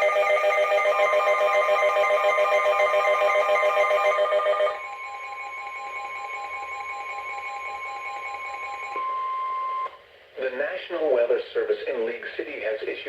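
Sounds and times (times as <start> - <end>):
pulsing electronic alarm tones: 0.0 - 9.9
steady single alarm tone: 0.0 - 10.0.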